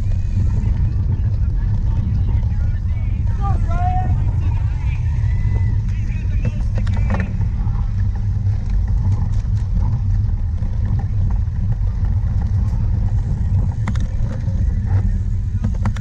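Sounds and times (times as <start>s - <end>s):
wind rumble on microphone: 0.0s - 16.0s
light clicks and rattles: 5.8s - 16.0s.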